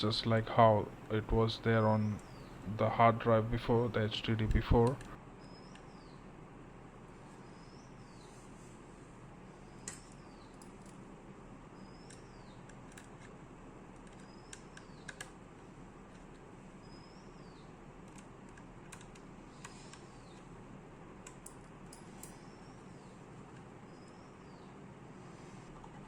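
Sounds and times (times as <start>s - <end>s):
steady low hum: 0.0s - 26.0s
bird chirping: 1.2s - 4.4s, 5.4s - 6.3s, 7.3s - 8.4s, 9.6s - 10.6s, 11.7s - 12.7s, 14.2s - 15.2s, 16.8s - 17.8s, 23.8s - 24.8s
small clicks and taps of handling: 14.0s - 16.5s, 18.0s - 20.5s.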